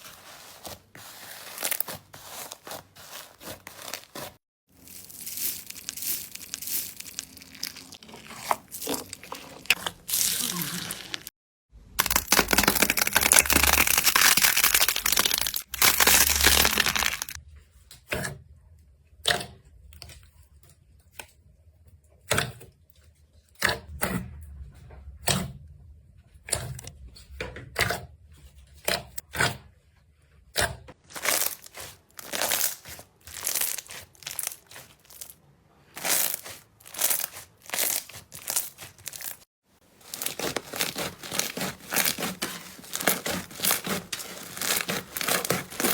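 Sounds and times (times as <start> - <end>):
slime crackling and popping: 3.4 - 11.3, 12.0 - 17.4, 31.1 - 35.4, 36.0 - 39.4, 40.0 - 45.9.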